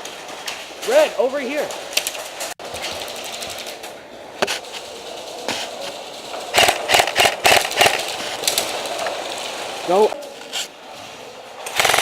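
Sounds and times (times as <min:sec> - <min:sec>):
airsoft guns firing: 0:06.5 - 0:08.2, 0:11.7 - 0:12.0.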